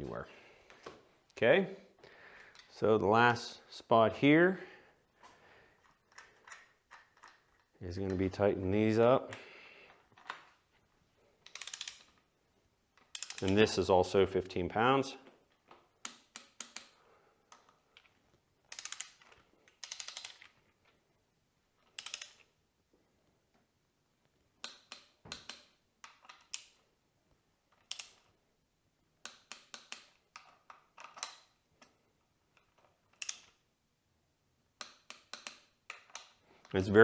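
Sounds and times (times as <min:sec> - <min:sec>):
ratchet wrench pawl clicking: 0:11.5 - 0:12.1, 0:13.1 - 0:13.6, 0:18.7 - 0:20.4, 0:22.0 - 0:22.4.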